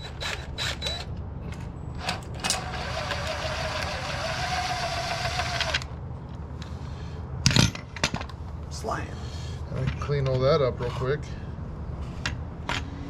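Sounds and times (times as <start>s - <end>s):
power tool motor whining: 2.0s - 5.9s.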